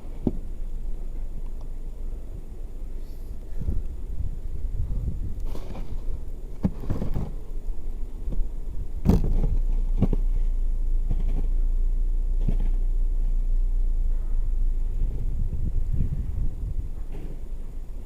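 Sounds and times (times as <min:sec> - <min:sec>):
steady low rumble: 0:00.0 - 0:18.0
snow shovel scraping snow: 0:05.5 - 0:07.5.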